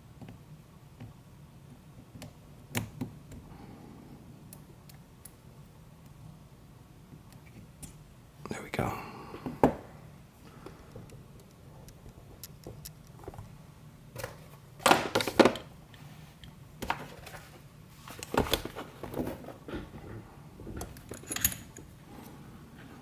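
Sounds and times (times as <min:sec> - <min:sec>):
metal lock parts clicking: 0:20.8 - 0:21.9.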